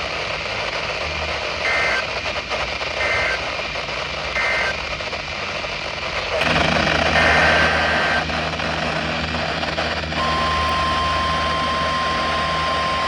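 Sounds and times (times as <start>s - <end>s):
radio hiss: 0.0s - 13.0s
two-tone data squeal bursts: 10.2s - 13.0s.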